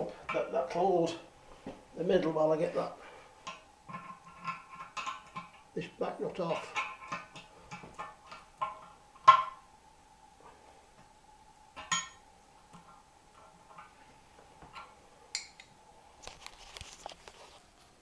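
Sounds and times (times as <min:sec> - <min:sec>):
tools clinking on metal: 0:11.8 - 0:12.2, 0:15.3 - 0:15.7.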